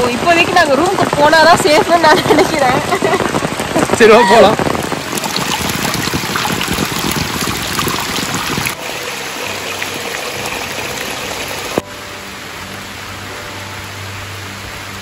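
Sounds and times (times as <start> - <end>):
heavy rain falling: 0.0 - 15.0.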